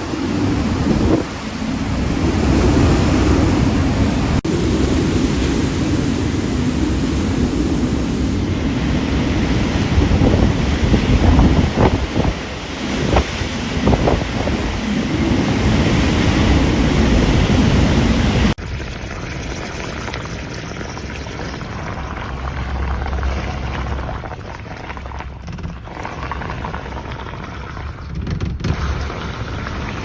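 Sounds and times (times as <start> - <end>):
strong wind buffeting microphone: 0.0 - 18.6.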